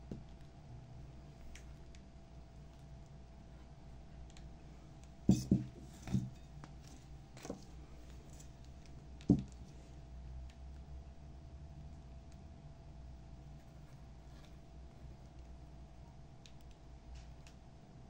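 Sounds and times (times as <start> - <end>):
low steady hum: 0.0 - 18.0
hard objects knocking and clunking: 5.3 - 6.4, 9.2 - 9.6.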